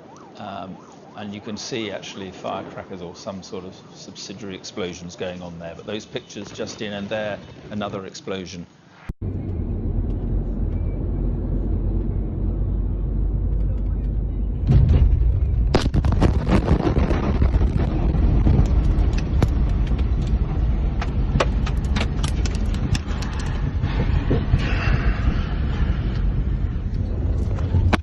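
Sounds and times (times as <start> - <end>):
heavy explosion rumble: 9.2 - 28.0
sharp cracks and pops: 15.8 - 20.4, 21.0 - 23.6.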